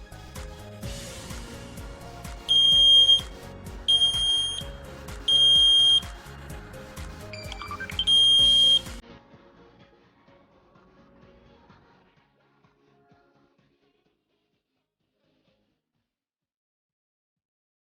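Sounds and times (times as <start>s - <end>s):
background music: 0.0s - 14.4s
rising electronic chirp: 2.5s - 3.3s, 3.9s - 4.6s, 7.3s - 9.0s
smoke alarm beeping: 2.5s - 3.3s, 3.9s - 4.7s, 5.3s - 6.1s, 7.3s - 9.0s.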